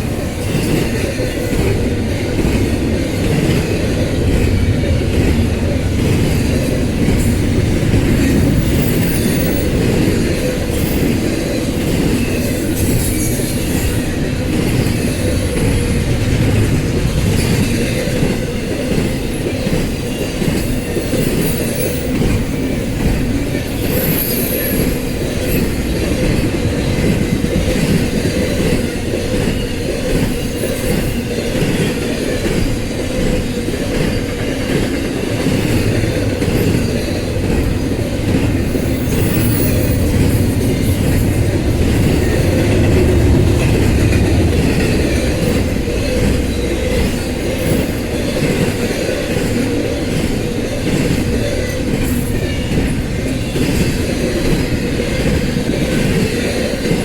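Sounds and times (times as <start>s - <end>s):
clickety-clack over rail joints: 0.0s - 57.0s
train wheels rumbling on rails: 0.0s - 57.0s
high wheel squeal: 23.7s - 25.9s, 34.0s - 49.0s.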